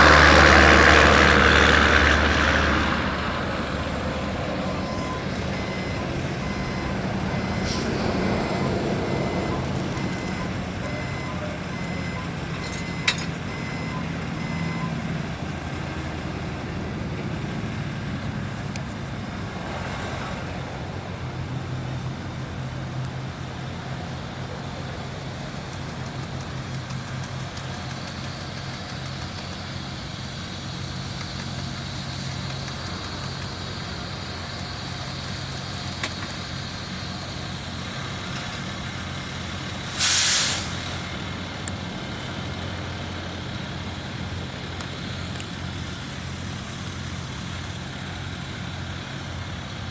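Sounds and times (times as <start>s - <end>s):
reversing alarm beeping: 0.0s - 15.1s, 26.4s - 41.2s, 44.9s - 49.9s
diesel truck engine running: 0.0s - 49.9s.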